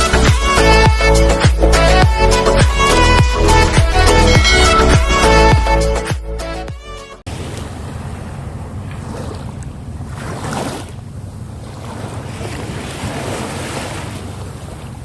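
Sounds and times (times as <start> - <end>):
sea waves washing on shore: 7.3 - 15.0.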